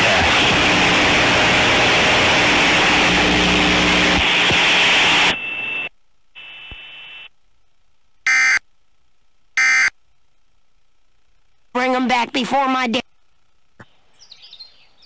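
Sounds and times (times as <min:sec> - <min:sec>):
harsh static noise: 0:00.0 - 0:13.8
harsh electronic beeping bursts: 0:04.1 - 0:05.9, 0:08.3 - 0:08.6, 0:09.6 - 0:09.9.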